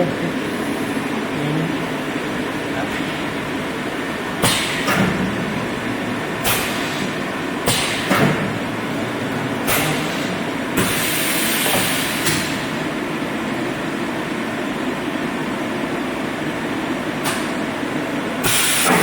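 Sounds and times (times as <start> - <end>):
packaging machine humming: 0.0 - 14.1, 15.7 - 19.0
pneumatic hiss: 6.4 - 8.2, 9.7 - 12.8, 18.4 - 19.0.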